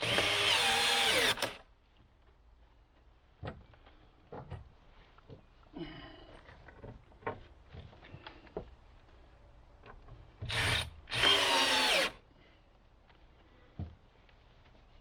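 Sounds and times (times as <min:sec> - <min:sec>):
power drill driving screws: 0:00.0 - 0:01.6, 0:10.5 - 0:12.2.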